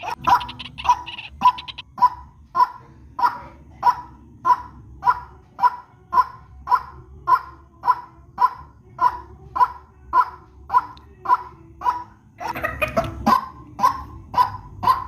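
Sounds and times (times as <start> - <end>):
waterhen bark-like call: 0.0 - 1.8.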